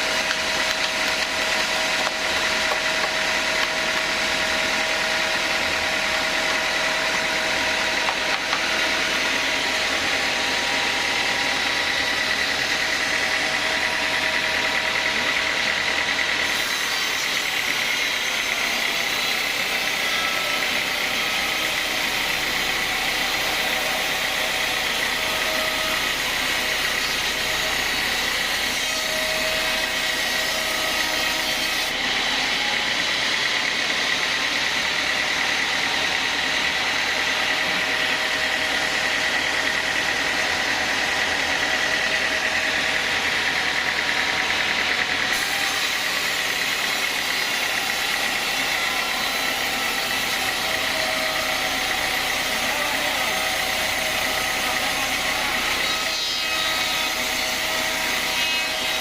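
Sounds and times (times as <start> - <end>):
band saw whine: 0.0 - 59.0.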